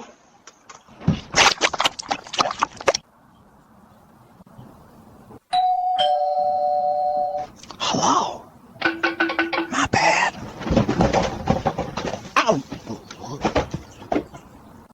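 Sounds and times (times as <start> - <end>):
two-tone doorbell chime: 5.5 - 7.5
sharp knocks clattering: 8.8 - 14.5.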